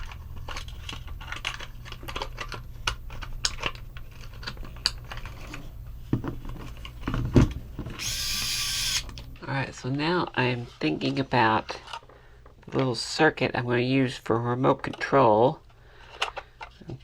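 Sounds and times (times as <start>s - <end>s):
hissing whir: 8.0s - 9.4s.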